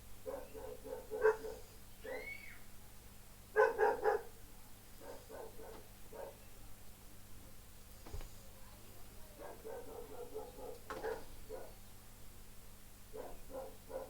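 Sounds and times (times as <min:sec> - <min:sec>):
dog barking: 0:00.2 - 0:02.2, 0:03.6 - 0:04.4, 0:05.0 - 0:06.4, 0:09.4 - 0:11.8, 0:13.1 - 0:14.0.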